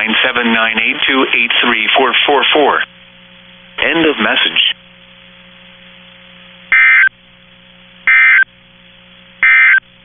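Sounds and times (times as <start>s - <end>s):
faint steady hum: 0.0s - 10.0s
screechy digital tone bursts: 6.7s - 7.1s, 8.1s - 8.4s, 9.4s - 9.8s.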